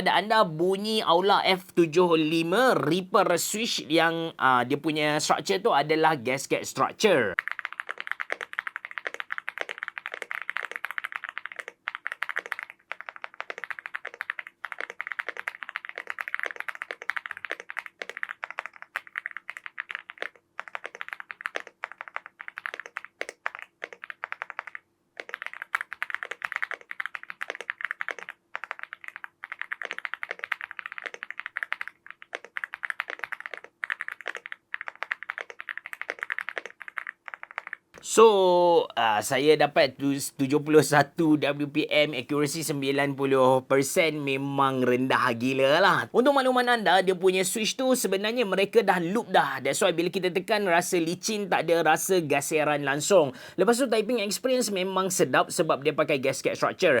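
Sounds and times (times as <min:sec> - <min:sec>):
mechanical keyboard typing: 0:04.6 - 0:38.0.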